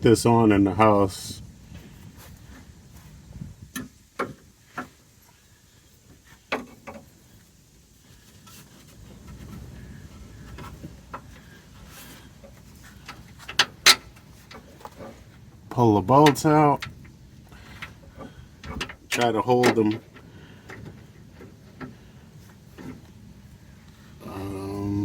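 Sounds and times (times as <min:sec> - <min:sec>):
hand tools clicking and knocking: 0:12.4 - 0:15.3, 0:16.1 - 0:22.0.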